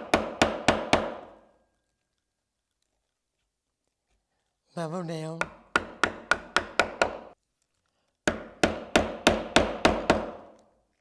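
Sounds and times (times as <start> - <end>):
mallet striking chisel: 0.0 - 1.4, 5.4 - 7.4, 8.3 - 10.6.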